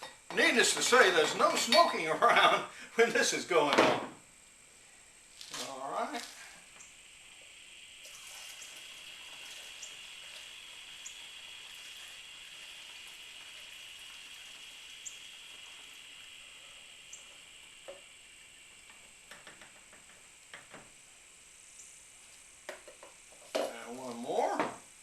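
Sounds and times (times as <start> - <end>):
liquid pouring hiss: 6.1 - 23.7.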